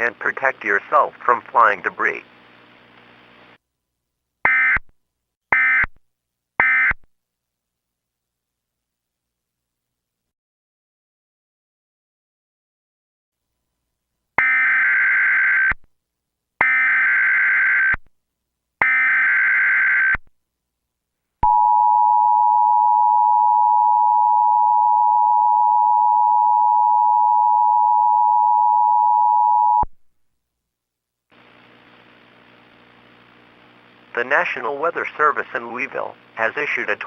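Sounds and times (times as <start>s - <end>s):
steady attention tone: 21.4s - 29.9s.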